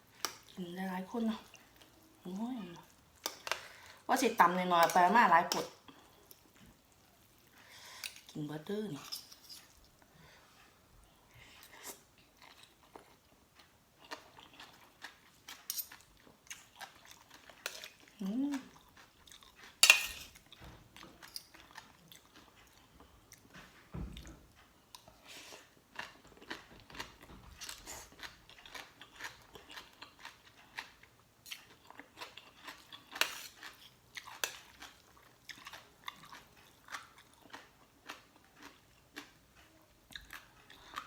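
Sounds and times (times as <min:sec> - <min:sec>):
person chewing and crunching: 0:11.7 - 0:23.5, 0:24.6 - 0:41.0.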